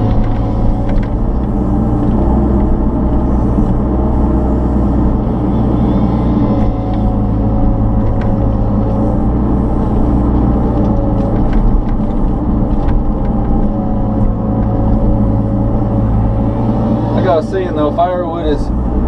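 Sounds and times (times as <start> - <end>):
thin hydraulic whine: 0.0 - 11.7
excavator diesel engine running: 0.0 - 19.0.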